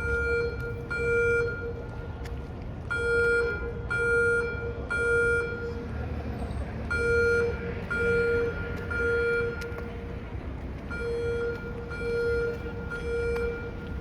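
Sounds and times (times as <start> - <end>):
fire alarm beeping: 0.0 - 1.9, 2.9 - 5.7, 6.9 - 9.8, 10.9 - 14.0.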